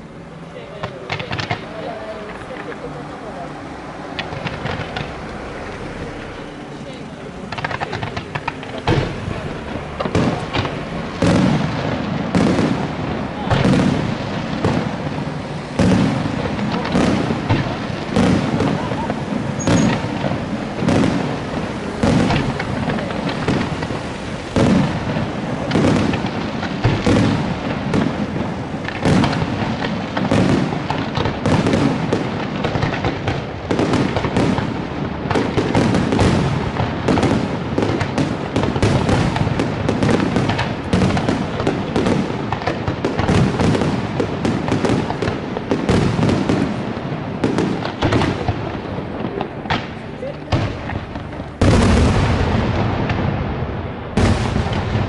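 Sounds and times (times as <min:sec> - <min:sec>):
fireworks shells bursting: 0:04.0 - 0:46.8.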